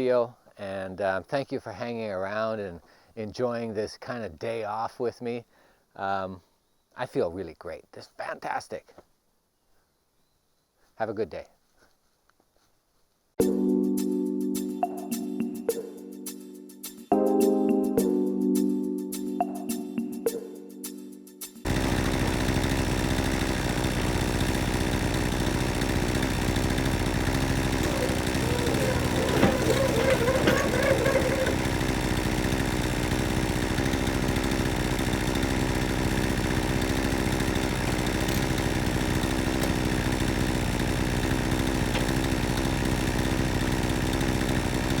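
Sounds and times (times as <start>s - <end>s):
engine idling: 21.7s - 45.0s.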